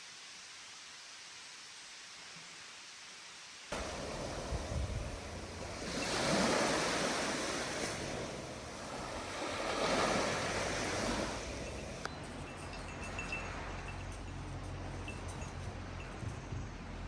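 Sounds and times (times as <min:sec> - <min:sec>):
sea waves washing ashore: 0:03.7 - 0:16.2
wind on microphone: 0:03.8 - 0:14.1.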